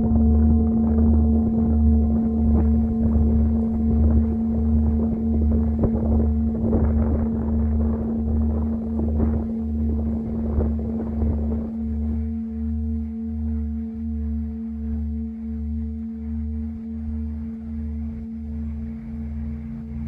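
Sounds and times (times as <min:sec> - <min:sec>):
wind on microphone: 0:00.0 - 0:14.6
singing bowl ringing: 0:00.0 - 0:20.0.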